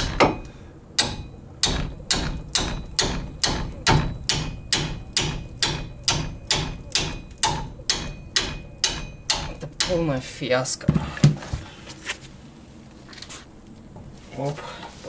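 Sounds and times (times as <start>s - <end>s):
hammer striking metal nut: 0.0s - 10.1s.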